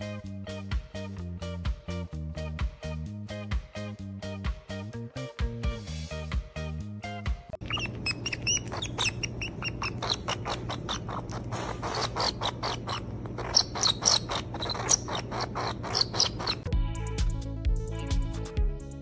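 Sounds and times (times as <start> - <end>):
small animal chirping and squeaking: 7.6 - 16.7.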